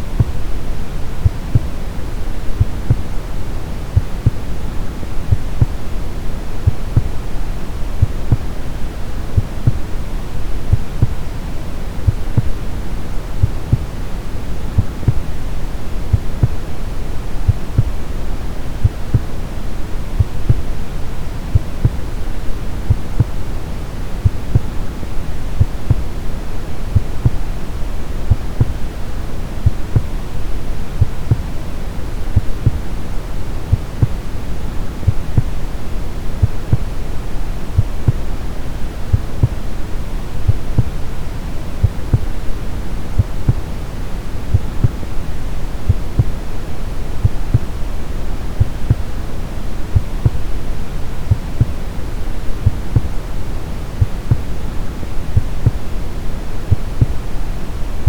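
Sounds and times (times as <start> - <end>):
brown noise hiss: 0.0 - 58.0
heartbeat thumping: 0.1 - 0.6, 1.2 - 1.8, 2.4 - 3.1, 4.0 - 4.5, 5.2 - 5.9, 6.6 - 7.3, 8.0 - 8.6, 9.4 - 9.9, 10.7 - 11.2, 12.0 - 12.8, 14.7 - 15.3, 16.1 - 16.7, 17.4 - 18.0, 18.8 - 19.4, 20.2 - 20.8, 21.5 - 22.1, 22.8 - 23.4, 24.2 - 24.8, 25.6 - 26.1, 28.3 - 28.9, 29.6 - 30.2, 31.0 - 31.5, 32.4 - 32.9, 35.0 - 35.6, 36.4 - 37.0, 37.8 - 38.3, 39.1 - 39.7, 40.5 - 41.0, 44.5 - 45.1, 45.9 - 46.4, 47.2 - 47.8, 48.6 - 49.2, 49.9 - 50.5, 51.3 - 51.9, 52.6 - 53.2, 54.0 - 54.5, 55.4 - 55.9, 56.7 - 57.3.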